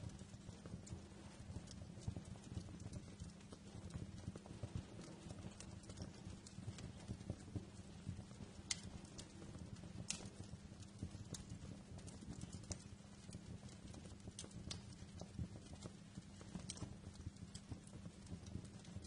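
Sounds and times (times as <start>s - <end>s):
fire crackling: 0.0s - 19.0s
sharp fire pops: 8.4s - 18.5s.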